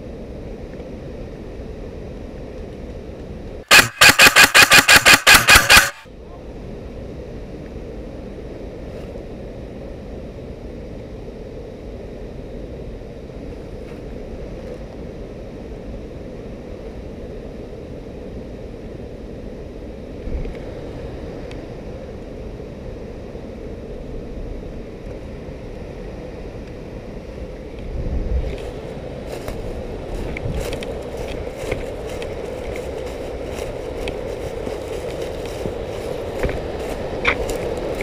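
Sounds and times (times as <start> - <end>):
camera rumbling noise: 3.7 - 6.0
crackling clicks of footsteps on twigs: 28.4 - 38.0.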